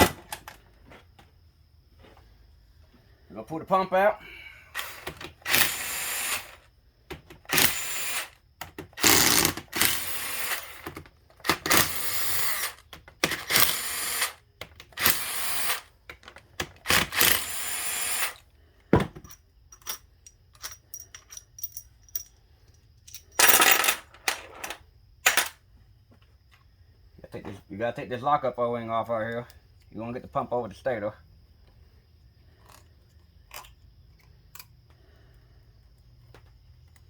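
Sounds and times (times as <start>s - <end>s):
power tool spinning out bolts: 4.8s - 6.6s, 7.4s - 18.4s
light clicks of metal parts: 19.2s - 23.4s.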